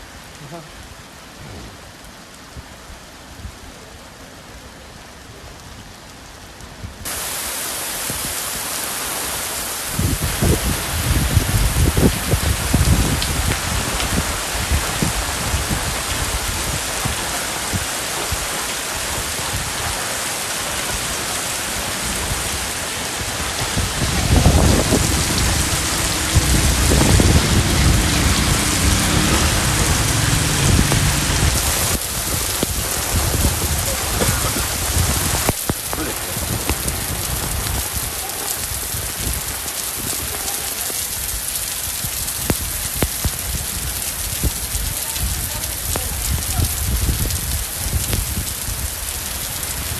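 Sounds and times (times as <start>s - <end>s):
heavy rain hissing: 0.0s - 49.9s
low rumble: 23.6s - 32.0s.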